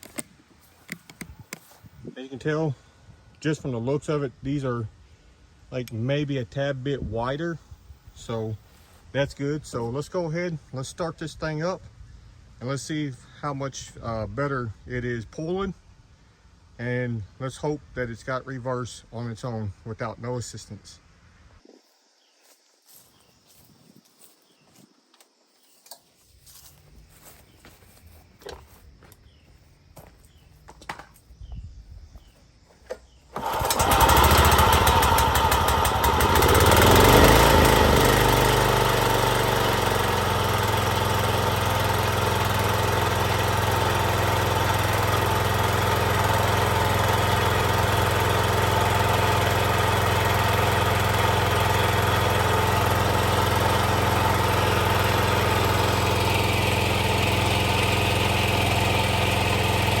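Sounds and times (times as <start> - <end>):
mower engine starting and running: 0.0 - 2.0, 33.3 - 60.0.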